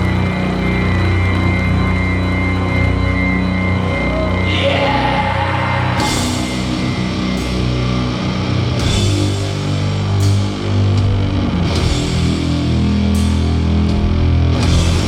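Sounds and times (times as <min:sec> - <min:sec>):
doom metal band playing live: 0:00.0 - 0:15.0
cymbal crash: 0:05.9 - 0:09.8.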